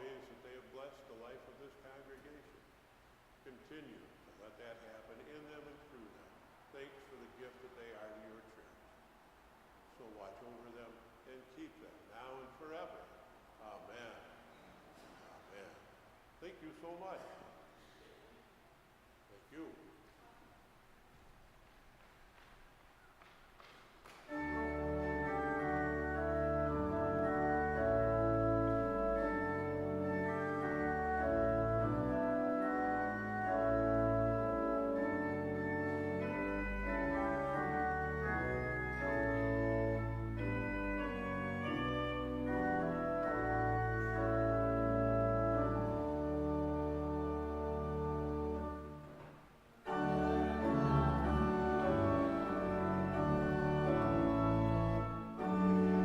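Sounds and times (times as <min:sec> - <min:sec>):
church organ chords: 0:00.0 - 0:08.7, 0:24.2 - 0:56.0.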